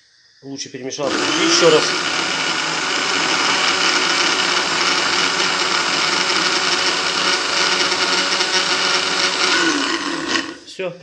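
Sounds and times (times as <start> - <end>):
electric coffee grinder grinding: 1.0 - 10.7.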